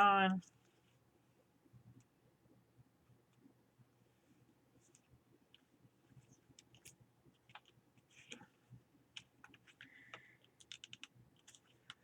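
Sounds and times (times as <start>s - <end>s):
paper rustling and ticking: 4.8s - 12.0s.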